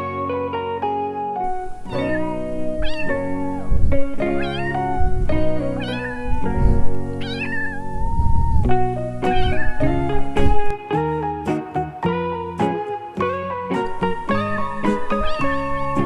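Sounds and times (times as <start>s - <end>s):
background music: 0.0s - 16.0s
cat meowing: 1.5s - 10.2s, 14.3s - 16.0s.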